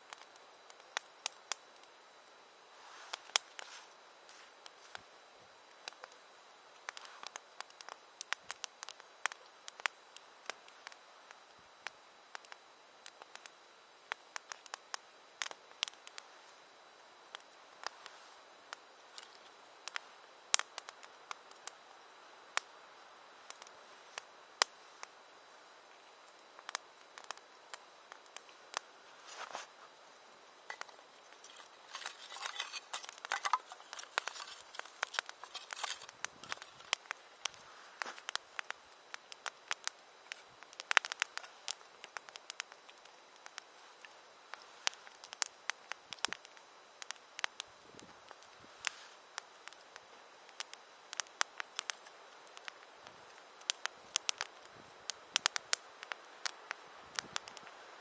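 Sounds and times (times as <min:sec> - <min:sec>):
campfire crackling: 0:00.0 - 0:58.0
scraping: 0:30.7 - 0:37.0.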